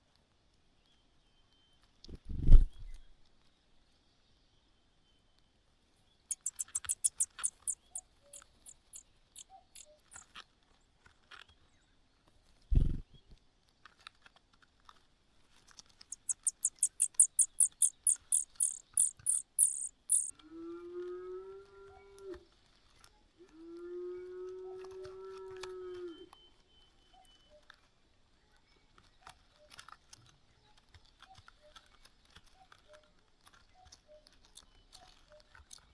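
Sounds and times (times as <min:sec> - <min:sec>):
long low-pitched bird calls: 0:06.3 - 0:08.0, 0:16.1 - 0:20.3
nestling birds cheeping: 0:06.3 - 0:09.0, 0:16.1 - 0:20.3.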